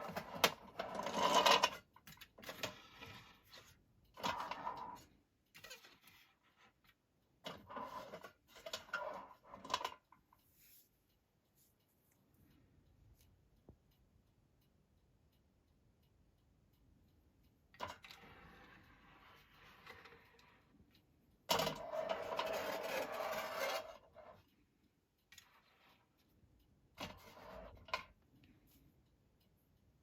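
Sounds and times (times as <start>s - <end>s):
tin toy cars rubbing and scraping: 0.0s - 6.9s, 7.5s - 10.0s, 17.8s - 20.7s, 21.5s - 24.5s, 25.3s - 26.1s.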